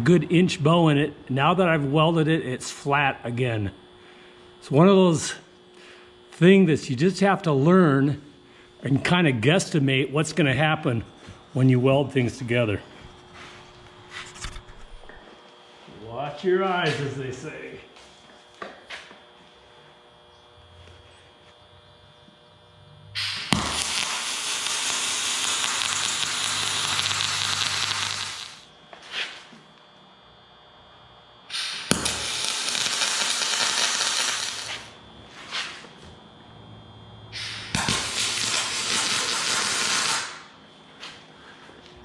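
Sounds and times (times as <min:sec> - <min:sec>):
arc strikes: 0:23.2 - 0:28.7, 0:31.5 - 0:35.0, 0:37.3 - 0:40.5
welding arc hissing and crackling: 0:23.2 - 0:28.7, 0:31.5 - 0:35.0, 0:37.3 - 0:40.5.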